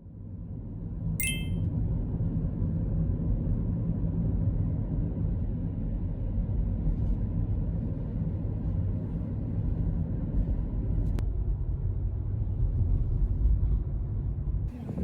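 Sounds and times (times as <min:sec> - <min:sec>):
brief click: 0:01.2 - 0:01.5.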